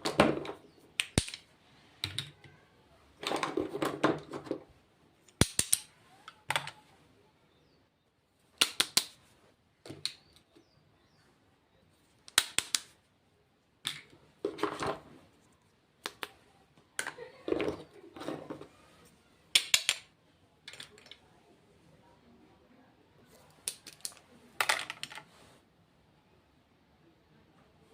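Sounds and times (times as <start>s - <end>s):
makeup cases clicking and tapping: 19.6s - 20.1s.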